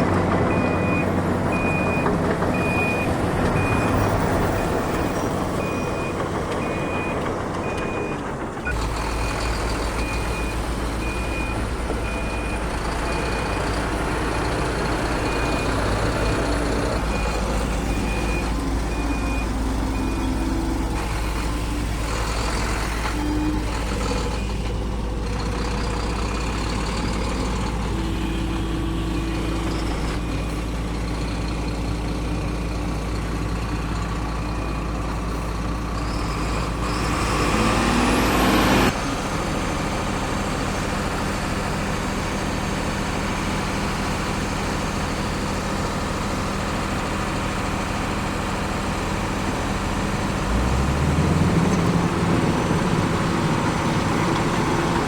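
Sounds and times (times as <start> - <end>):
diesel engines running: 0.0 - 55.0
engine revving: 35.9 - 40.0, 49.7 - 55.0.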